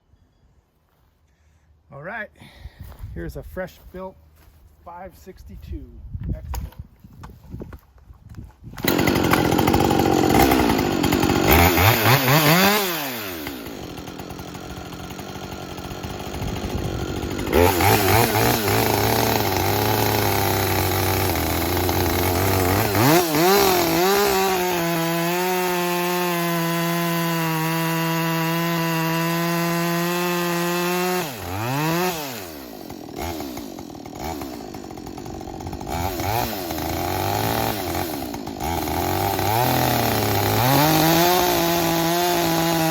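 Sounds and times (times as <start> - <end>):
chainsaw revving and cutting wood: 8.7 - 42.9.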